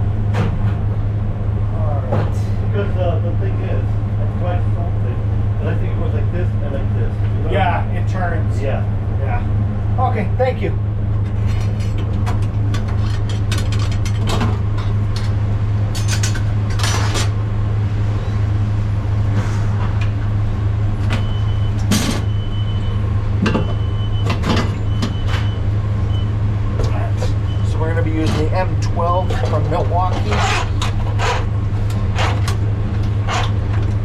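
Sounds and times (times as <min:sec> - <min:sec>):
low machinery hum: 0:00.0 - 0:34.0
knocks and clatter: 0:11.2 - 0:17.4.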